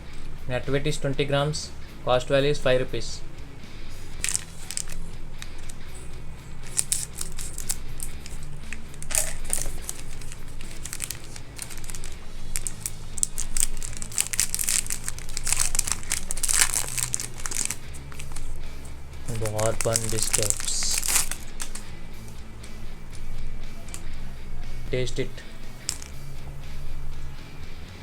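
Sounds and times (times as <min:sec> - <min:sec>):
plastic wrapper crinkling: 0:04.2 - 0:05.8, 0:06.5 - 0:18.6, 0:19.2 - 0:21.8, 0:25.8 - 0:26.1.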